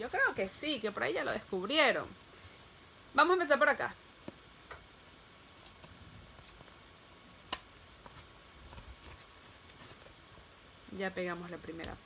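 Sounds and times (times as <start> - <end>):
paper rustling: 7.5 - 10.2.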